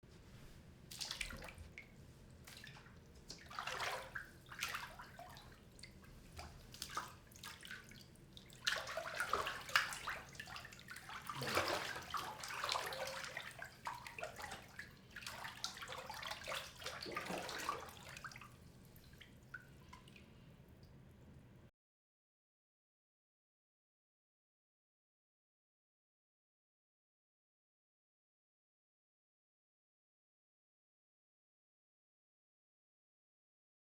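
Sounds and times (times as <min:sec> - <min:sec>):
bath water sloshing and splashing: 0:00.2 - 0:20.3
water drips: 0:00.9 - 0:21.0.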